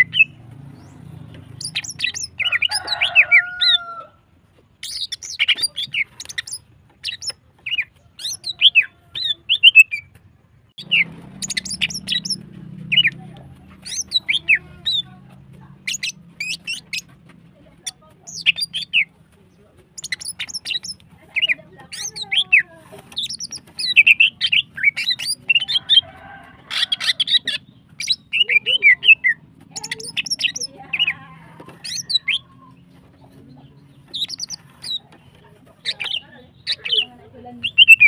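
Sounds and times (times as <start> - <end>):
bird chirping: 0.0 - 4.0, 4.7 - 38.0
drawn-out low bird call: 23.2 - 32.9.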